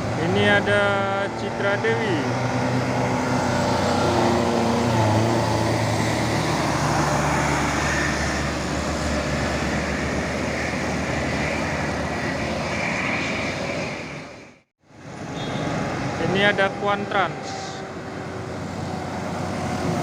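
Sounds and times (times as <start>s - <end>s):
bus diesel engine passing: 0.0s - 20.0s
road noise: 0.0s - 20.0s.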